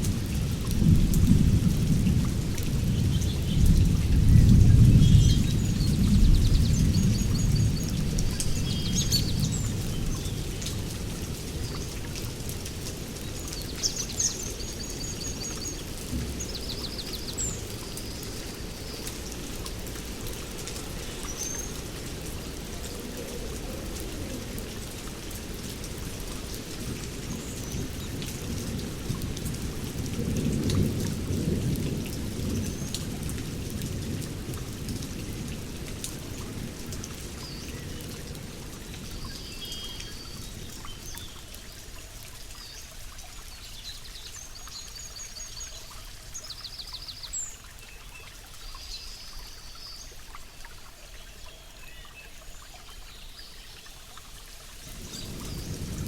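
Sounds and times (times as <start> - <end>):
heavy rain: 0.0 - 56.0
low rolling thunder: 0.1 - 9.8, 27.8 - 35.7, 54.8 - 56.0.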